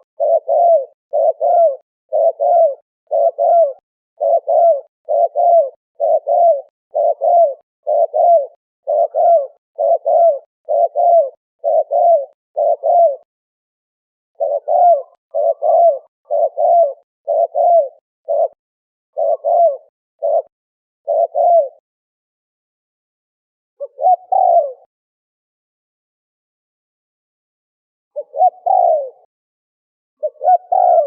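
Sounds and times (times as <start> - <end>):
dove cooing: 0.0 - 13.3, 14.4 - 21.8, 23.8 - 24.9, 28.2 - 29.3, 30.2 - 31.0.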